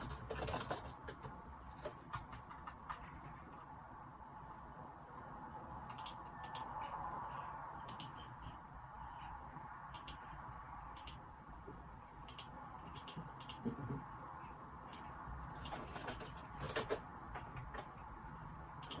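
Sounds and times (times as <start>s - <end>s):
computer keyboard keystrokes: 0.0s - 3.6s, 14.9s - 18.0s.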